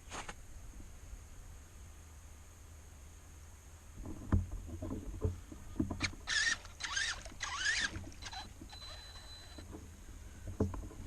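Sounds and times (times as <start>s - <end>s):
mud splashing: 6.2s - 8.8s
electric motor whine: 6.2s - 9.6s.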